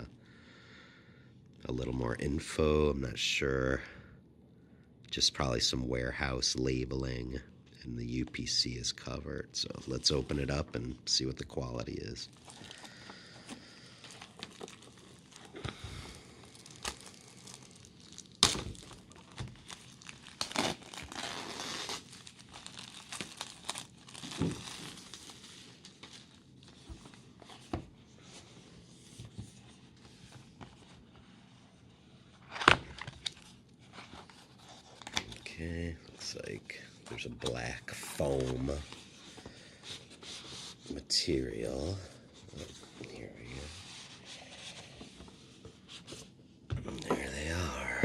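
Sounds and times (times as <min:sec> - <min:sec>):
packaging crinkling and tearing: 0:12.2 - 0:27.2.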